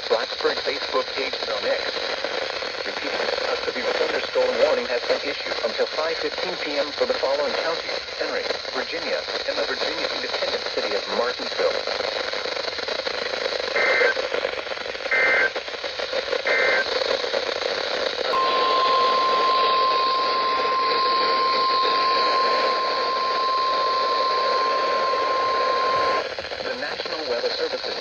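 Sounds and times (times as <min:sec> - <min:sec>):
radio receiver hiss: 0:00.0 - 0:28.0
screeching data bursts: 0:16.5 - 0:16.8, 0:18.3 - 0:27.4
steady piercing attention tone: 0:18.3 - 0:26.7.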